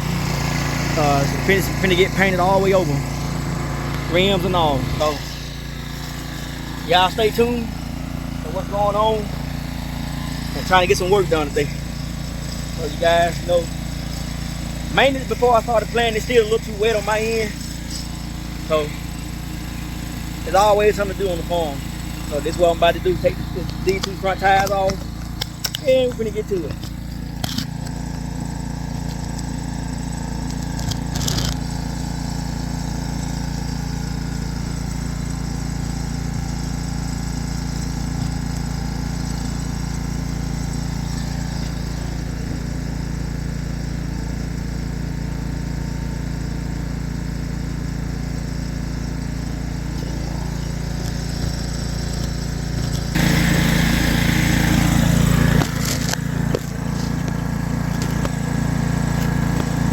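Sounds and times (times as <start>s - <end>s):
engine idling: 0.0s - 59.9s
loud noisy burst: 53.1s - 56.6s.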